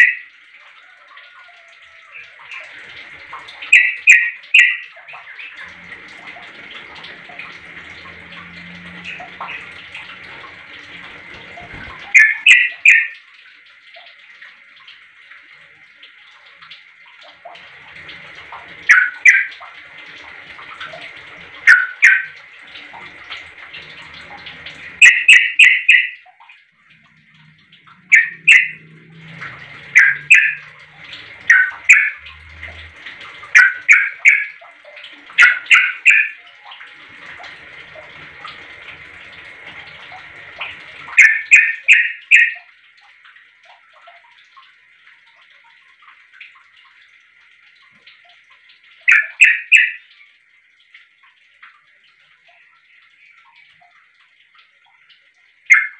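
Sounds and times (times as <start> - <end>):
bulbul calling: 0.0 - 0.3, 3.7 - 4.9, 12.1 - 13.2, 18.9 - 19.5, 21.7 - 22.4, 25.0 - 26.3, 28.1 - 28.8, 30.0 - 30.7, 31.5 - 32.2, 33.6 - 34.6, 35.4 - 36.4, 41.2 - 42.7, 49.1 - 50.0.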